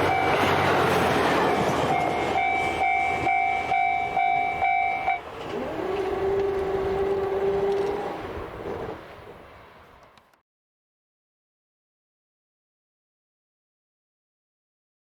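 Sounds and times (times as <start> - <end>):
rail-joint clicks: 1.0 - 9.0
low tone sliding up: 1.9 - 8.9.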